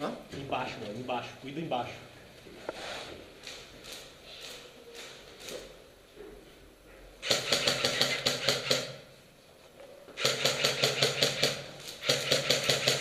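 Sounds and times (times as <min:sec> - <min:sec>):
airsoft gun full-auto bursts: 0:07.2 - 0:09.0, 0:10.2 - 0:13.0.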